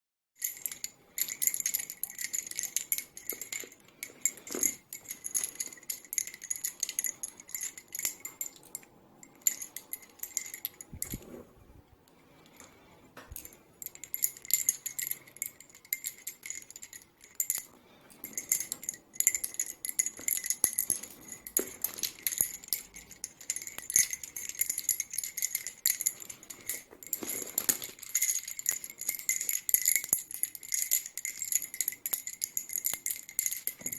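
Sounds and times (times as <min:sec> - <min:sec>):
lace bobbins clicking together: 0:13.3 - 0:33.9.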